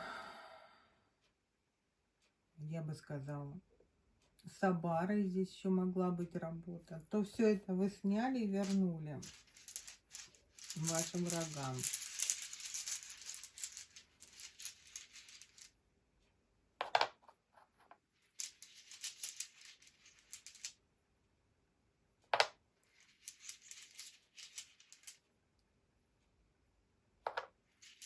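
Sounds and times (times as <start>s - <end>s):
runes rattling: 8.1s - 15.7s, 18.2s - 20.8s, 22.4s - 25.2s, 27.3s - 28.0s.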